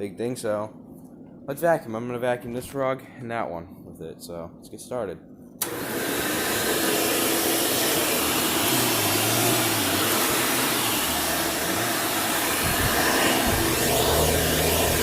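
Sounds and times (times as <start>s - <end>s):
vacuum cleaner running: 5.6s - 15.0s.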